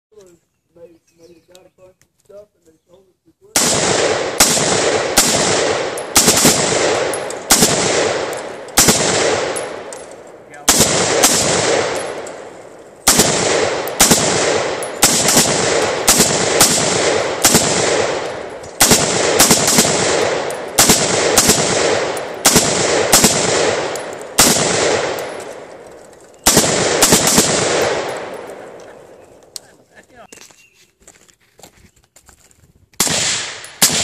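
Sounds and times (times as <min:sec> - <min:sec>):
rifle shots with echo: 0:03.5 - 0:29.6, 0:33.0 - 0:34.0.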